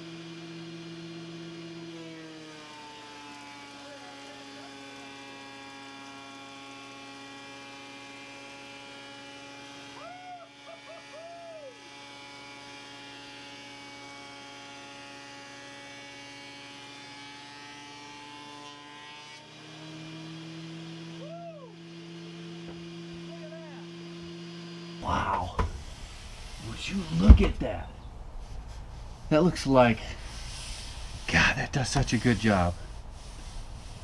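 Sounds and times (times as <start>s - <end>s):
thickness planer humming: 0.0s - 34.0s.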